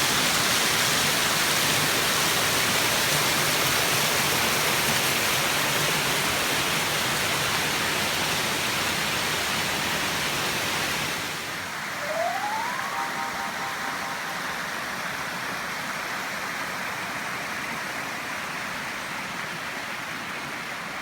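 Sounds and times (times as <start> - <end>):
rising whistle-like tone: 11.8 - 15.5.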